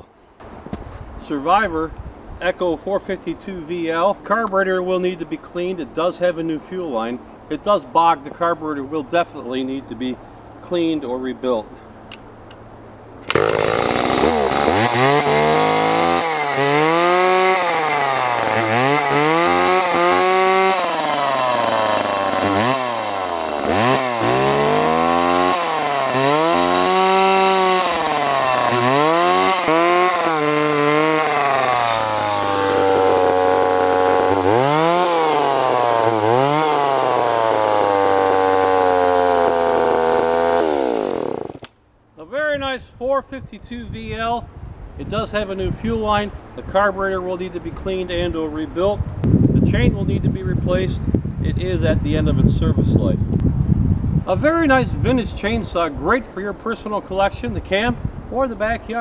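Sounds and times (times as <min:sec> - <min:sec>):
chainsaw engine revving: 0:13.2 - 0:41.8.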